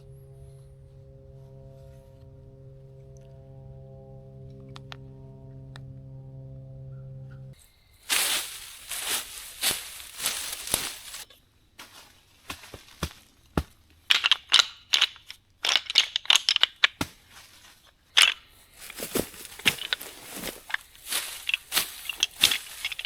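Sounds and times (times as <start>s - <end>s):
dry leaves and twigs crunching: 7.6s - 23.0s.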